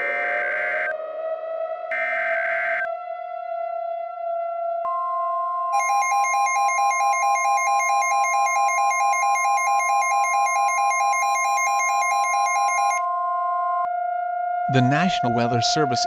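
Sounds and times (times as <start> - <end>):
fast warbling electronic alarm: 0.0 - 3.2, 4.9 - 13.9, 14.7 - 16.0
steady high alert tone: 5.7 - 13.1.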